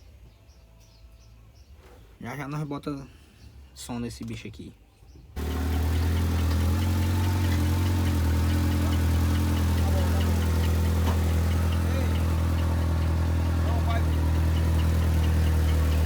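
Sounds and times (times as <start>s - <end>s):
loud deep bass from speakers: 8.1s - 16.0s.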